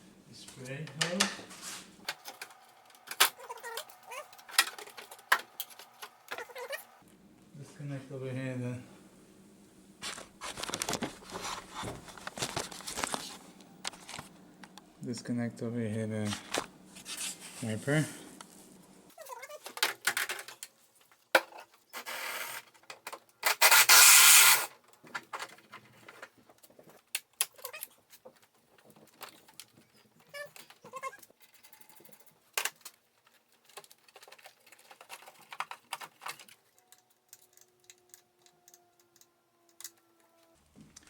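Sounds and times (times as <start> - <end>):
tools clicking and knocking on plastic: 24.8 - 40.0.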